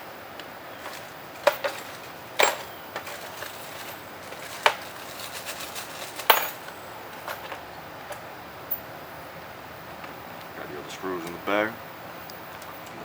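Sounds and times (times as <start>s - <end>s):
metal parts clicking: 0.8s - 8.8s
light ticks: 11.2s - 11.4s.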